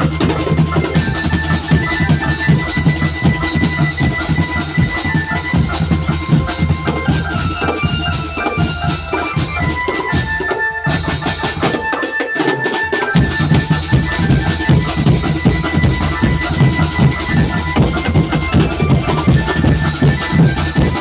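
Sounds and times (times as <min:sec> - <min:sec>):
drum beats: 0:00.0 - 0:21.0
held high melody notes: 0:00.0 - 0:21.0.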